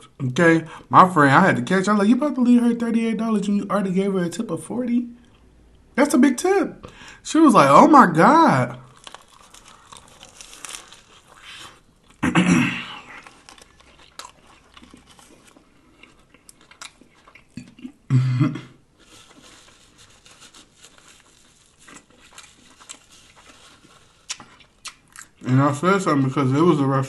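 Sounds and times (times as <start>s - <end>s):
person chewing sandwich: 8.8s - 18.1s, 18.8s - 25.4s
wet crunching mouth noises: 8.8s - 18.1s, 19.1s - 25.5s.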